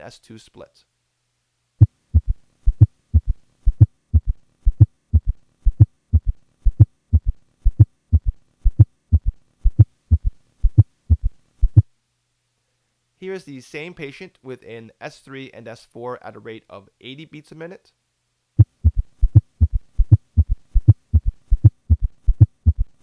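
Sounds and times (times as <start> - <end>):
heartbeat thuds: 1.8 - 11.9, 18.6 - 23.0.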